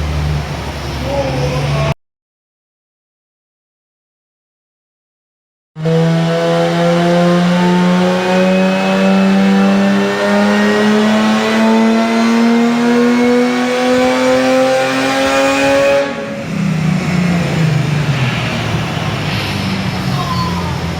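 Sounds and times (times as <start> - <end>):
car engine revving: 5.8 - 20.9.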